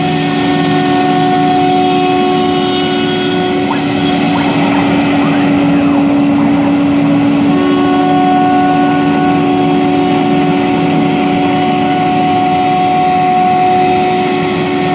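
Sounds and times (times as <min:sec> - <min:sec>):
wood cutting noise: 0:03.7 - 0:08.0
router spindle whine: 0:03.7 - 0:08.3.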